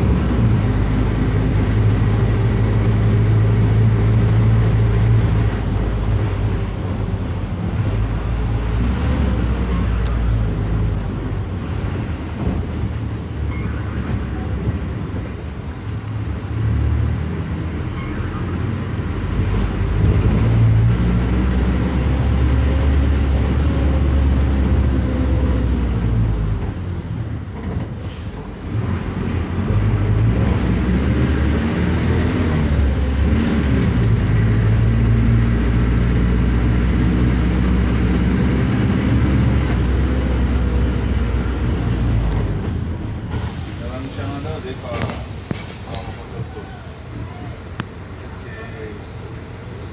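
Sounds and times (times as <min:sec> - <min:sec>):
bus diesel engine accelerating: 0:00.0 - 0:49.9
brake squeal: 0:13.2 - 0:18.8, 0:26.2 - 0:30.3, 0:42.0 - 0:47.1
air brake hiss: 0:43.2 - 0:44.2.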